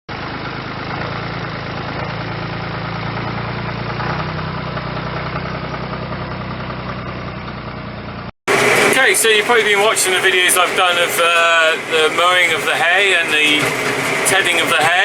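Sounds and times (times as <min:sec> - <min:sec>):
tractor engine running: 0:00.1 - 0:15.0.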